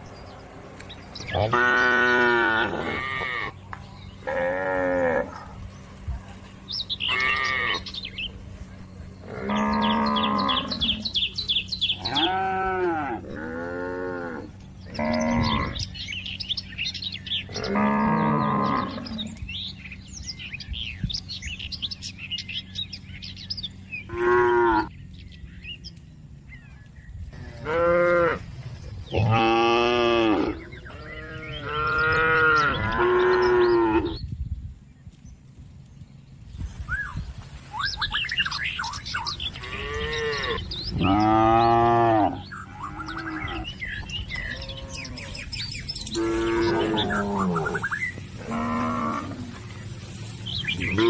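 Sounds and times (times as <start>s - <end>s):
birds chirping: 0.0s - 51.0s
cattle mooing: 1.2s - 3.6s, 4.2s - 5.6s, 7.0s - 8.0s, 9.2s - 11.2s, 11.9s - 15.9s, 17.5s - 19.4s, 24.1s - 24.9s, 29.1s - 34.2s, 39.5s - 49.7s, 50.6s - 51.0s.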